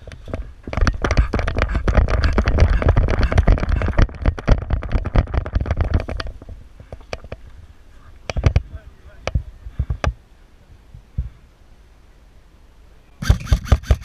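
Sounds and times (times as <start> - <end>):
airsoft rifle full-auto bursts: 13.2 - 14.0.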